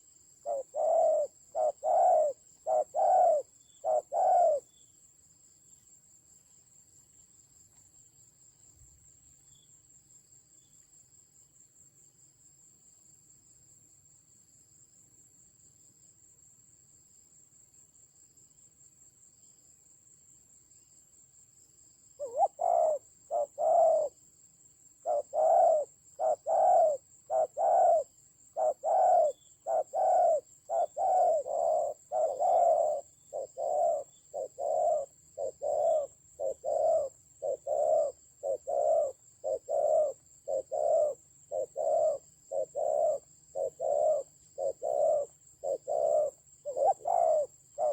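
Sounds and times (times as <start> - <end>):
dove cooing: 0.0 - 4.7, 22.2 - 24.2, 25.0 - 47.9
high insect trill: 0.0 - 47.9.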